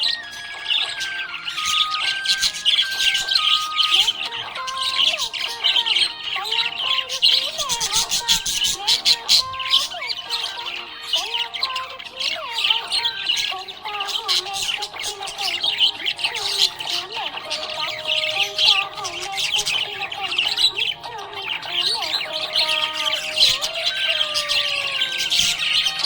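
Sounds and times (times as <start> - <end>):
budgerigar chirping: 0.0 - 26.0.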